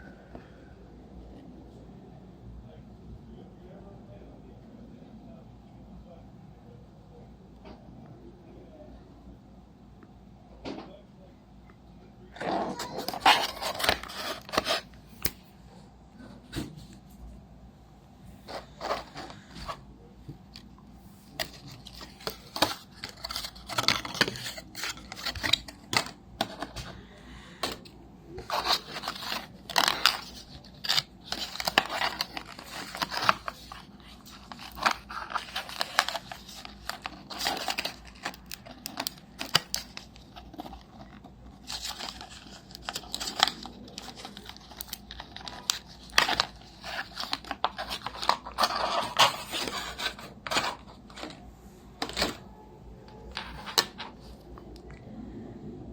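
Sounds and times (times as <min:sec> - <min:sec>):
packaging tearing and crinkling: 0:12.7 - 0:15.4, 0:21.4 - 0:26.8, 0:28.4 - 0:51.1.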